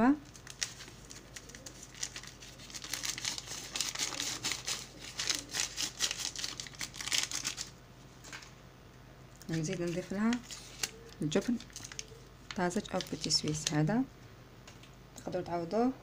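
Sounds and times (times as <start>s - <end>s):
food packaging crinkling: 0.2s - 8.5s, 9.4s - 13.9s.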